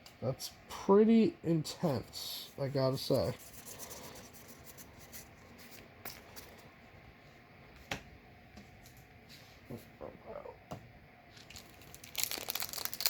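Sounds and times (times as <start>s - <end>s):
trading cards rustling: 11.4s - 13.0s.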